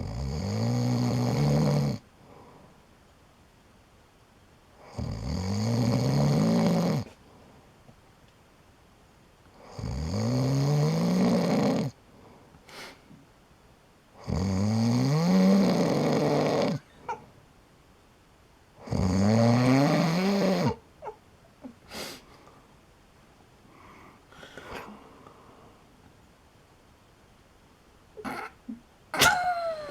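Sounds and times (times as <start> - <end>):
loud snoring: 0.0 - 2.0, 4.8 - 7.1, 9.6 - 12.0, 14.2 - 16.9, 18.8 - 20.8
small faint noises: 0.0 - 29.9
quiet breathing: 2.0 - 3.0, 7.0 - 7.8, 11.9 - 13.3, 21.6 - 22.9, 23.6 - 26.0.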